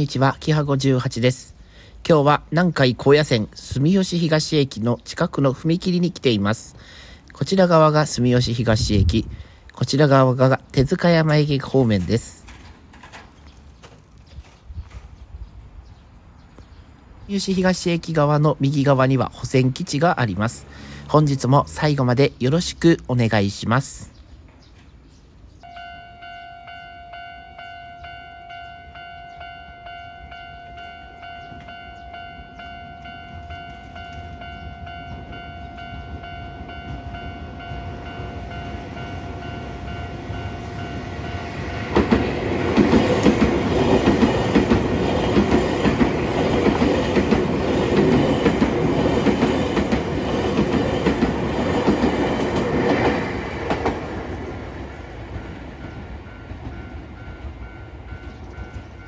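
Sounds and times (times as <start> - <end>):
train wheels clacking over rail joints: 11.9 - 14.1, 41.7 - 54.4
level crossing warning bell: 25.6 - 53.2, 55.4 - 59.0.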